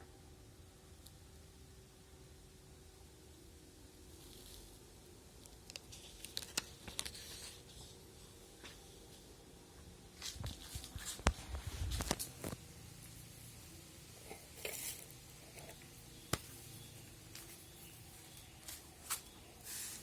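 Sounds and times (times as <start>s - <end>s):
paper rustling: 5.7s - 7.9s.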